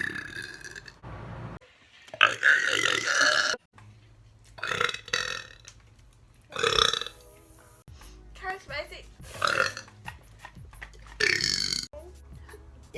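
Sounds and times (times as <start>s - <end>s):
woman burping: 2.2s - 3.6s, 9.4s - 10.0s, 11.2s - 11.9s.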